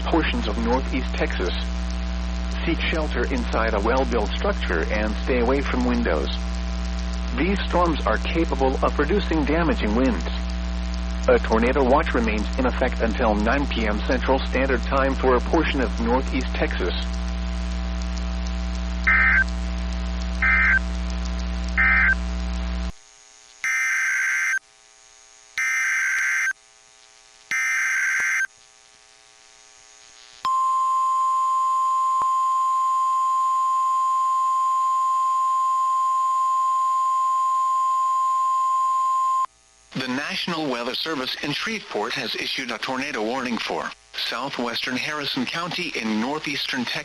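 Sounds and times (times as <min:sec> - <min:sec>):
data bursts: 0:19.0 - 0:19.6, 0:20.4 - 0:20.9, 0:21.8 - 0:22.2, 0:23.6 - 0:24.6, 0:25.6 - 0:26.6, 0:27.5 - 0:28.5
warning alarm tone: 0:19.1 - 0:19.5, 0:20.4 - 0:20.8, 0:21.8 - 0:22.2, 0:23.6 - 0:24.6, 0:25.6 - 0:26.5, 0:27.5 - 0:28.5.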